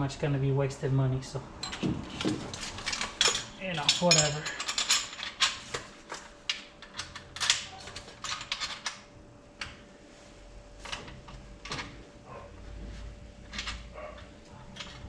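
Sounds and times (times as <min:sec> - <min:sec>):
faint steady hum: 0:00.0 - 0:15.0
metal parts clicking and clinking: 0:01.6 - 0:09.7, 0:13.4 - 0:15.0.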